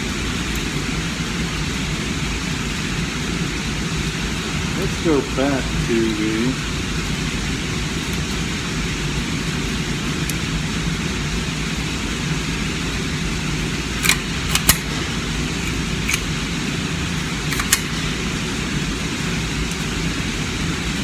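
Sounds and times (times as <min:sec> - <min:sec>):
low hum: 0:00.0 - 0:21.0
metallic clicks of cartridges: 0:14.0 - 0:14.9, 0:15.6 - 0:16.4, 0:17.4 - 0:18.0.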